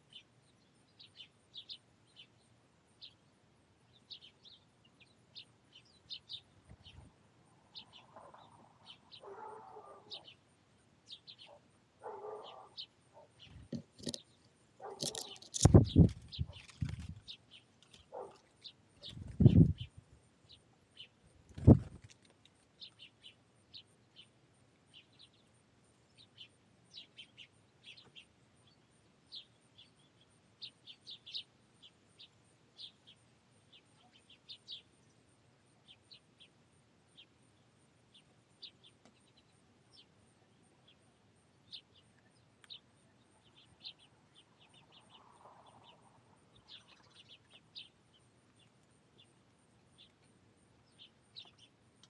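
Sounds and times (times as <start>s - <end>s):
finches chirping: 11.1s - 18.4s.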